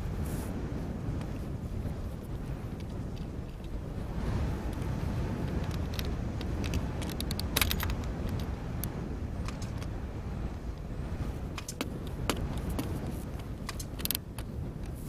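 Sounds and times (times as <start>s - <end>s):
steady low rumble: 0.0s - 15.0s
tools clicking and clattering: 5.4s - 8.5s, 11.6s - 14.5s.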